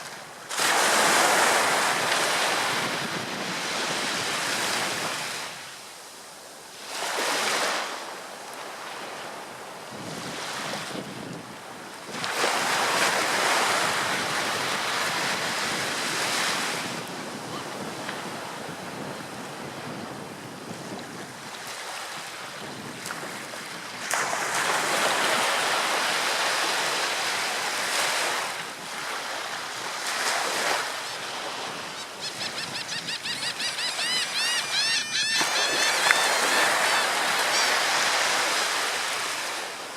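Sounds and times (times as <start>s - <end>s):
ocean waves breaking: 6.8s - 39.9s
high bird calls: 31.7s - 38.1s.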